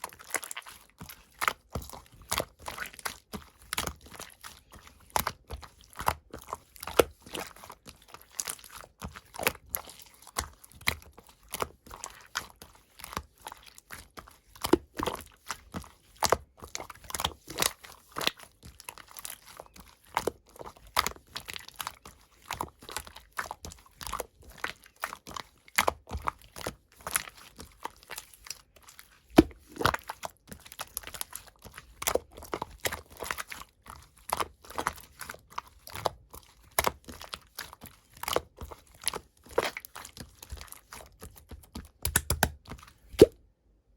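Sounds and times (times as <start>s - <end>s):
slime crackling and popping: 29.3s - 43.3s.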